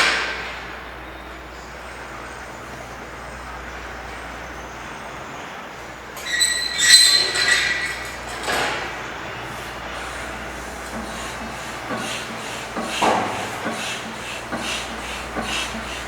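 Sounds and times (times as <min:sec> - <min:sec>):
high-pitched metallic squeal: 0:06.2 - 0:08.3.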